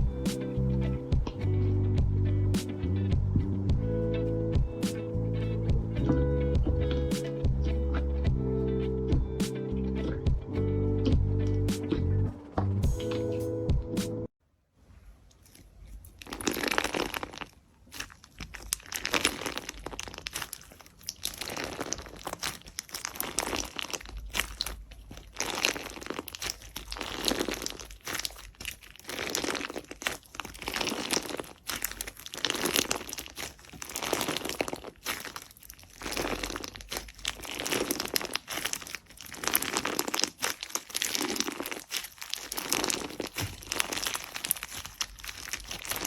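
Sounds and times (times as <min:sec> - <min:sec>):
slime crackling when squeezed: 0:16.2 - 0:46.0.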